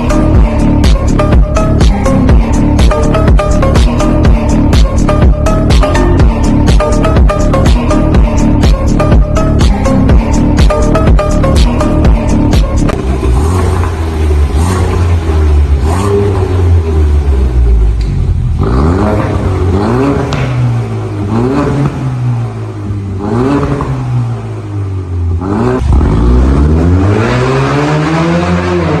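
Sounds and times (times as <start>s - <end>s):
car engine revving: 0.0s - 29.0s.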